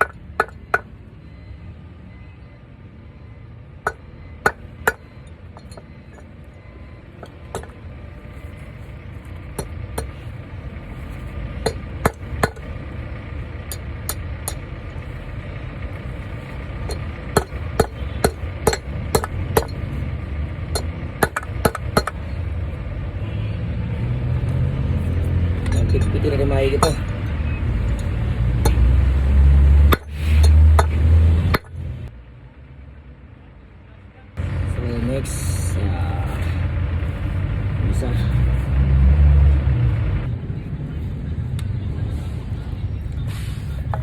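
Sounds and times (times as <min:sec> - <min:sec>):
hammer tapping metal: 0:00.0 - 0:00.9, 0:03.9 - 0:05.0, 0:09.6 - 0:10.2, 0:11.6 - 0:12.7, 0:13.6 - 0:14.7, 0:16.8 - 0:20.0, 0:20.7 - 0:22.2, 0:27.9 - 0:31.8.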